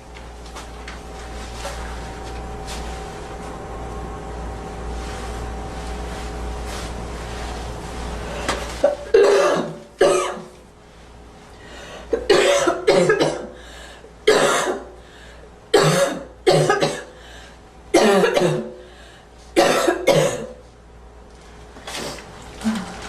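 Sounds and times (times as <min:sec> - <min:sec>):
girl coughing: 0:08.9 - 0:10.5, 0:12.1 - 0:13.6, 0:14.3 - 0:14.9, 0:15.7 - 0:17.2, 0:17.9 - 0:18.8, 0:19.6 - 0:20.6.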